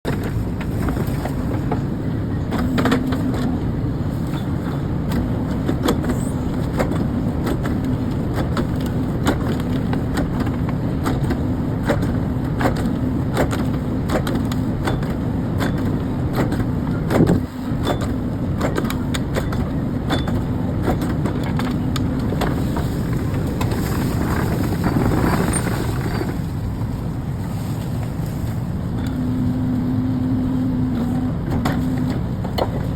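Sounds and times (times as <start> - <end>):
heavy machinery engine humming: 0.0 - 32.9
clicks and knocks of machine parts: 4.3 - 26.4, 31.0 - 32.9.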